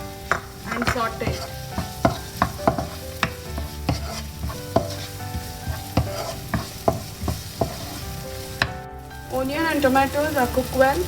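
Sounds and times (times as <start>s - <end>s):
light sizzle of frying: 0.0s - 11.0s
spatula tapping against pan: 0.3s - 7.9s.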